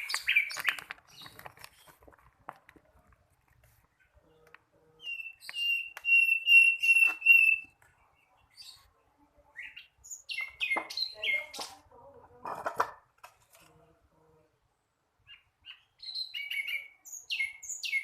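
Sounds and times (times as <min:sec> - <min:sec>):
young bird chirping: 0:00.0 - 0:02.0, 0:04.0 - 0:08.9, 0:09.6 - 0:11.7, 0:15.2 - 0:18.0.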